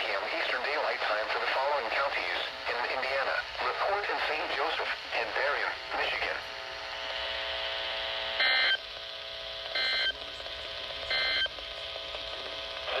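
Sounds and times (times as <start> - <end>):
shrill digital data tones: 11.1 - 11.5.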